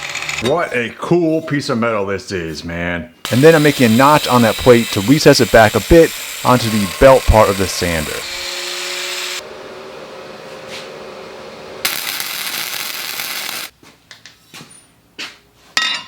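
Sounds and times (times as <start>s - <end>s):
power tool cutting steel plate: 3.3s - 9.4s, 11.8s - 13.7s.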